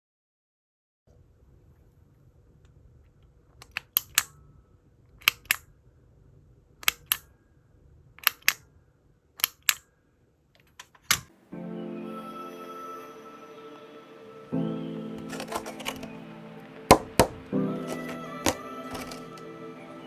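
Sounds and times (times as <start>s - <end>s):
mechanical keyboard keys clacking: 3.6s - 4.3s, 5.2s - 5.6s, 6.8s - 7.3s, 8.2s - 8.6s, 9.4s - 9.8s, 15.2s - 16.2s, 16.9s - 19.4s.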